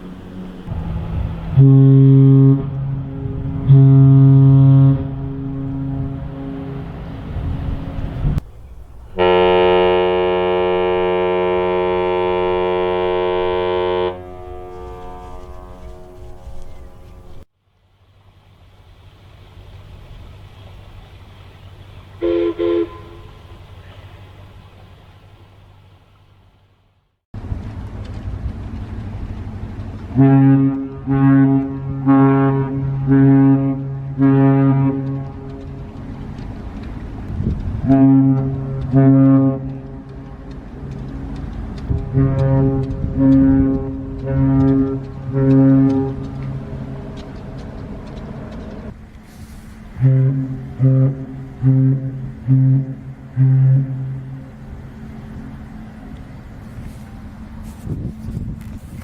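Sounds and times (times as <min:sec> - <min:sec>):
ferry horn blast: 0:00.0 - 0:08.4, 0:09.1 - 0:17.5, 0:22.2 - 0:23.7, 0:30.1 - 0:36.0, 0:37.5 - 0:41.0, 0:41.8 - 0:56.0.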